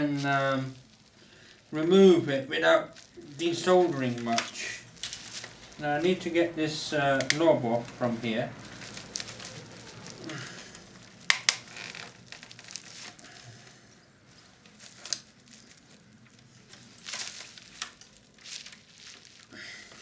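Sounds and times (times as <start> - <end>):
plastic parts scraping: 0.0 - 20.0
small plastic clicks: 11.2 - 13.2.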